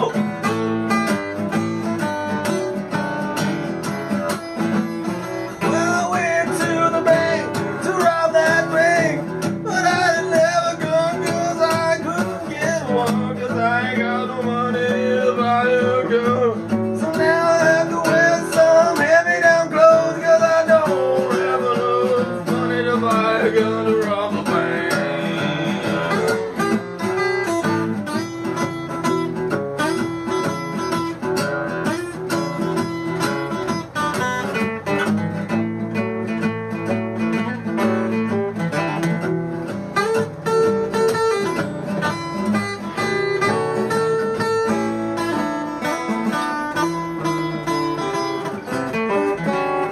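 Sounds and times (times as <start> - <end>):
acoustic guitar music: 0.0 - 49.9
wavering melody line: 24.0 - 27.8.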